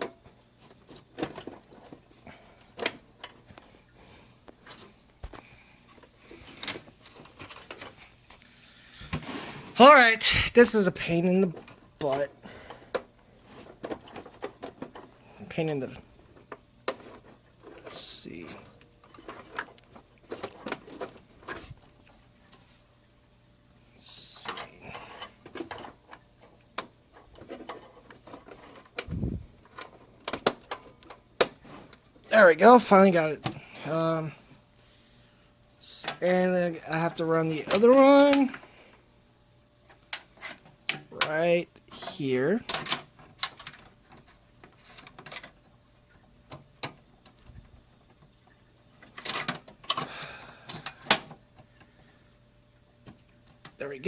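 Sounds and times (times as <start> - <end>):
cables and plastic connectors clicking: 0.0 - 3.7, 24.2 - 32.4, 37.0 - 38.6.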